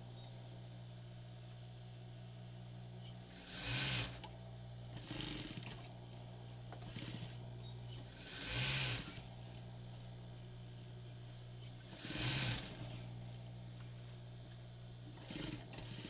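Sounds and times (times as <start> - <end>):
fast machine stitching: 3.3 - 4.3, 5.0 - 5.9, 6.8 - 7.4, 8.0 - 9.3, 11.8 - 13.0, 15.2 - 16.0
sewing machine motor humming: 3.3 - 6.0, 6.7 - 9.3, 11.6 - 13.2, 15.1 - 16.0.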